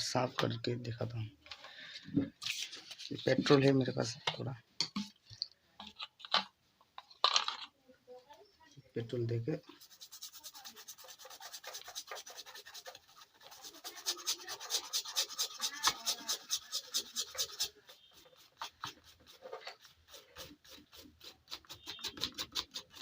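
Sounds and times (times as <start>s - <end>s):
scrubbing strokes on circuit board: 9.6s - 23.0s.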